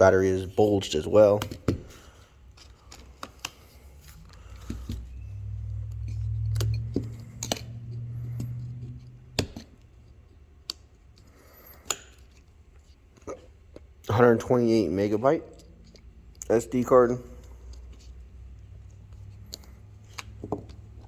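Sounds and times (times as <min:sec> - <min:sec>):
low rumble: 0:04.1 - 0:09.5.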